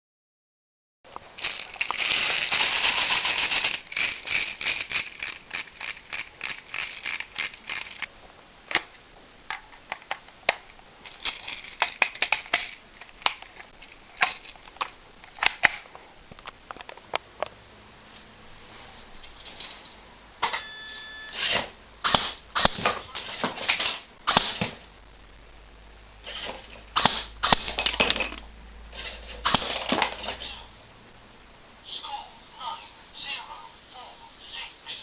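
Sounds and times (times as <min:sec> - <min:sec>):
toy gun shooting: 0:21.4 - 0:24.8, 0:26.3 - 0:28.2, 0:29.4 - 0:29.9.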